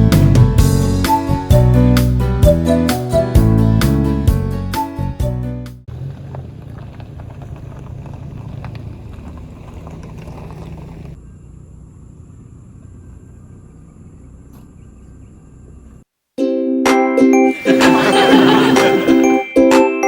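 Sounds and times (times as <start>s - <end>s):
car engine rumble: 0.0s - 2.3s, 5.8s - 16.1s
road noise: 4.9s - 16.2s, 17.5s - 19.5s.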